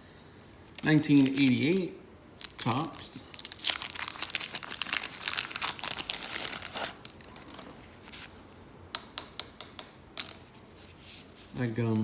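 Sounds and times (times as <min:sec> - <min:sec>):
wax paper wrapper tearing: 0:00.6 - 0:08.3
paper rustling: 0:00.6 - 0:08.7.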